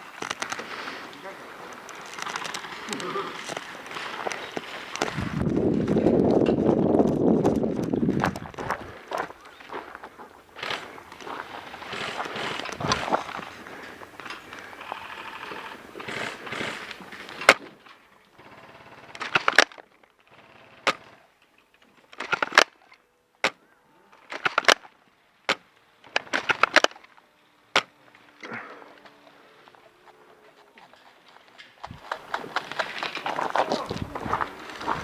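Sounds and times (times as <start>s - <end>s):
rustling movement: 0.0s - 22.9s, 24.2s - 35.0s
airsoft guns firing: 18.4s - 21.2s, 24.3s - 24.9s.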